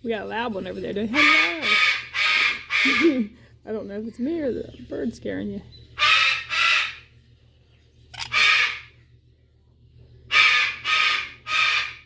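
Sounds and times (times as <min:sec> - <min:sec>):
parrot screeching: 0:01.1 - 0:03.1, 0:06.0 - 0:07.1, 0:08.2 - 0:08.9, 0:10.3 - 0:12.0.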